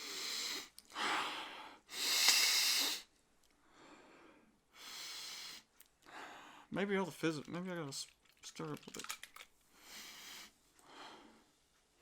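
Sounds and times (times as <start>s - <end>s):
man sniffing and breathing hard: 0.0s - 3.1s, 3.7s - 6.7s, 9.7s - 11.5s.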